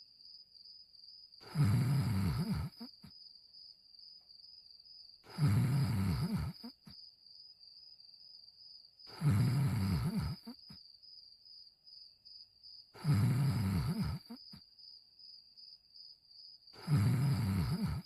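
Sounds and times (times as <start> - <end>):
cartoon dog snoring: 1.4 - 3.1, 5.2 - 7.0, 9.1 - 10.8, 13.0 - 14.6, 16.8 - 18.0.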